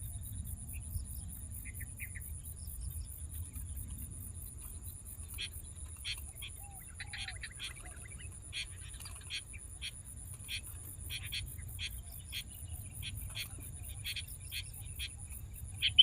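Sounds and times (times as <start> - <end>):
bird chirps and calls: 5.2 - 16.0.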